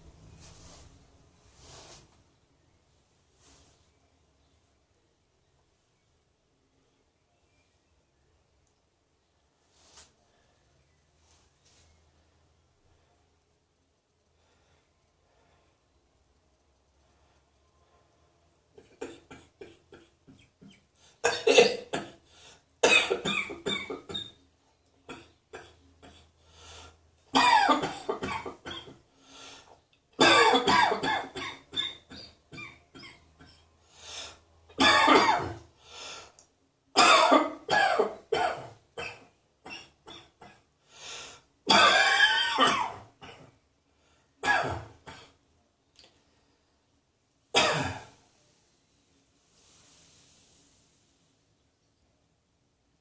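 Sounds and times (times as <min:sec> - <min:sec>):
person coughing: 0:21.3 - 0:22.2, 0:22.8 - 0:24.3, 0:27.4 - 0:29.0, 0:30.2 - 0:33.7, 0:34.8 - 0:35.6, 0:37.0 - 0:40.6, 0:41.7 - 0:43.5, 0:44.4 - 0:45.3, 0:47.6 - 0:48.2.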